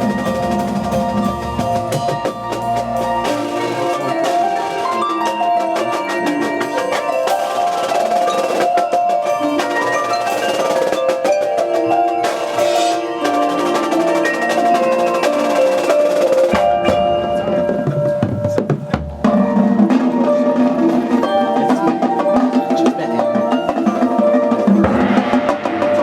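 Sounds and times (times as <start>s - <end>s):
brass and wind chords: 0.0s - 7.0s
mallet percussion: 0.0s - 26.0s
marching drumline: 0.0s - 26.0s.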